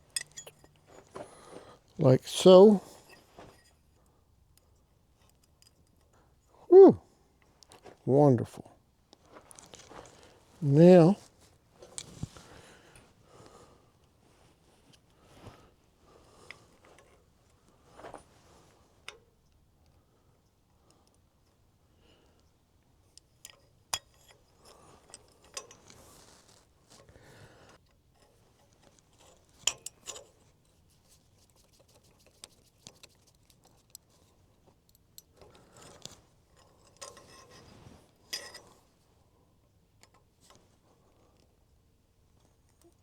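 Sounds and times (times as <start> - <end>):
metal parts clicking and clinking: 0.1 - 1.0.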